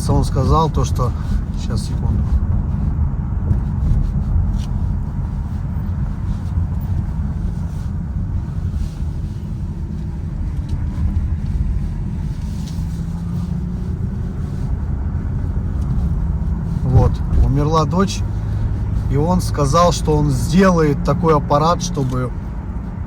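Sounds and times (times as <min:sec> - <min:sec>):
car engine and road noise: 0:00.0 - 0:23.0.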